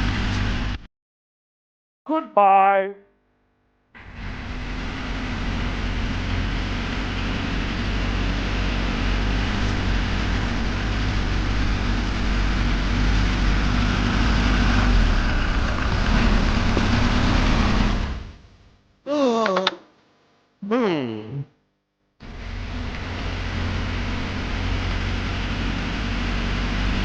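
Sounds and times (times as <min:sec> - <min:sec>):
engine rumbling: 0:04.0 - 0:18.7, 0:22.2 - 0:27.0.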